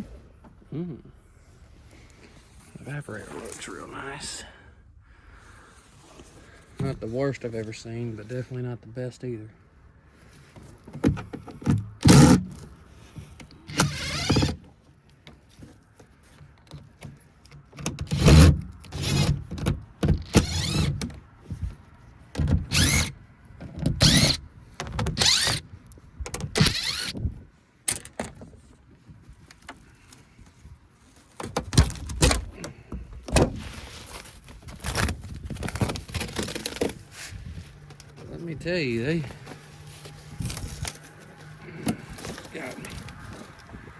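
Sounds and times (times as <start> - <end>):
power drill bursts: 13.7 - 14.6, 20.3 - 21.0, 22.7 - 23.1, 24.0 - 24.4, 25.2 - 25.6, 26.6 - 27.2.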